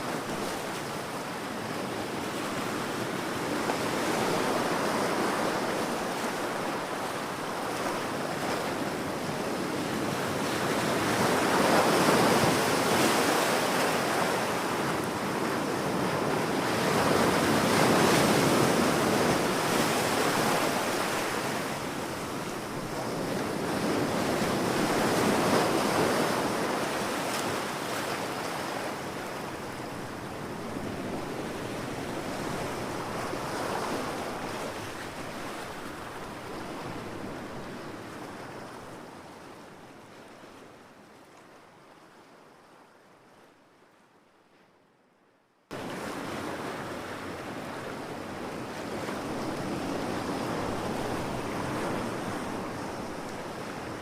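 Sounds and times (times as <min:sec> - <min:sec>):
ocean waves breaking on beach: 0:00.0 - 0:41.3, 0:45.7 - 0:54.0.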